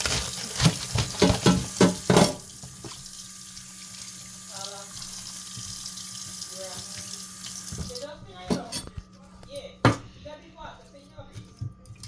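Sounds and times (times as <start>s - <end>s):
water splashes and knocks: 0.0s - 3.1s
tap running into a sink: 0.6s - 8.6s.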